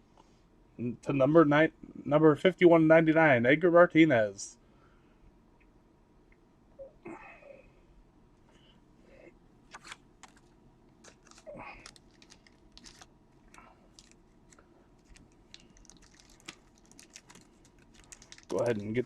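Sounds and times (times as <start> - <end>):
cards clicking and rustling: 9.7 - 19.0.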